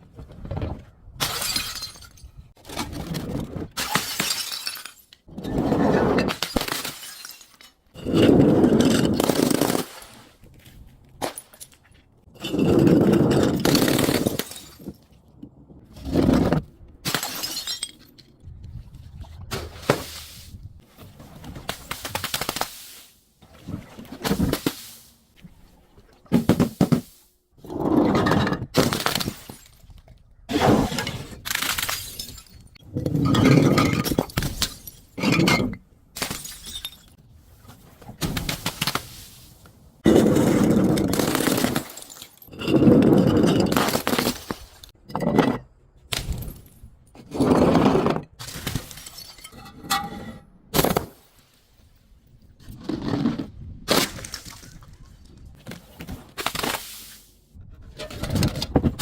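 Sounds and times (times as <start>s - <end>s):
glass bottles shattering: 1.2s - 2.4s, 3.8s - 5.2s, 6.2s - 9.9s, 12.4s - 15.0s, 17.0s - 18.2s, 31.0s - 37.2s, 40.9s - 44.5s, 48.5s - 50.1s.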